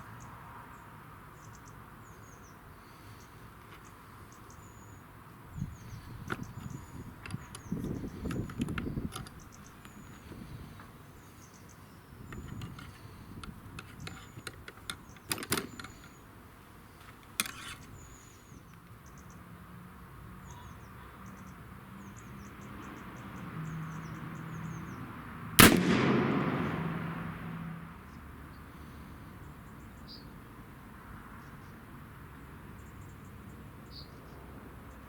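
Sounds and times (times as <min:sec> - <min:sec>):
short sharp clicks: 0:25.6 - 0:26.8
pistol shot with ringing tail: 0:25.6 - 0:27.5.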